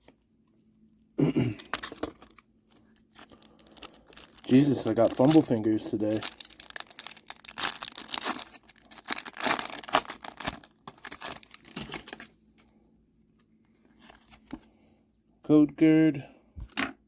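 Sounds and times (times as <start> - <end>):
foil wrapper crinkling and tearing: 1.6 - 2.4, 3.1 - 12.3.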